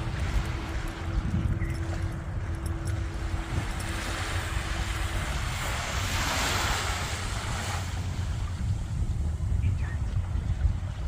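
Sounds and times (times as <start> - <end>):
wind rumbling on microphone: 0.0 - 11.0
surf breaking on a beach: 3.6 - 11.0.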